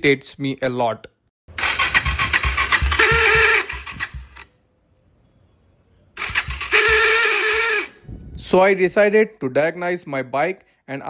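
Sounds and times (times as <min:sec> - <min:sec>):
motorcycle starter cranking engine: 0:01.5 - 0:04.5, 0:06.2 - 0:08.0.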